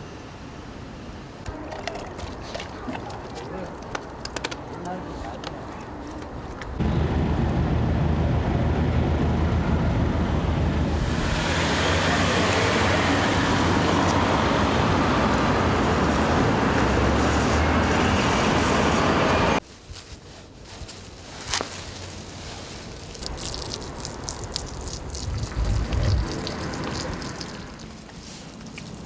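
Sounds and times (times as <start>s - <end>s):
road traffic rumble: 0.0s - 19.6s, 21.9s - 29.0s
vehicle passing hiss: 6.8s - 19.6s, 23.2s - 28.5s.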